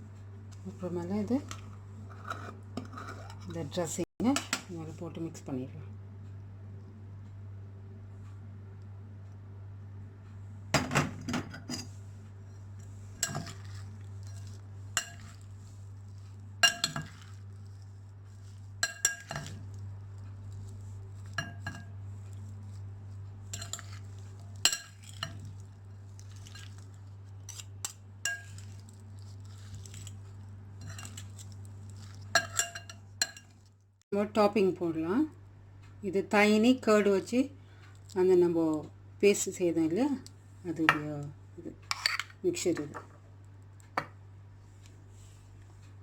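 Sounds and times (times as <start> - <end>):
steady low hum: 0.0 - 46.0
utensils clinking against bowl: 13.2 - 15.5, 16.6 - 17.4, 18.8 - 19.8, 21.2 - 22.0, 23.5 - 25.6, 27.5 - 28.9, 30.8 - 33.6.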